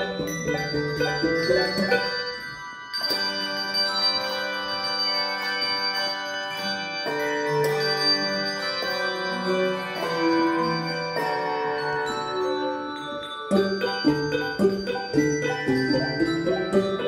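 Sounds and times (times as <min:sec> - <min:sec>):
handbell choir chords ringing: 0:00.0 - 0:17.0.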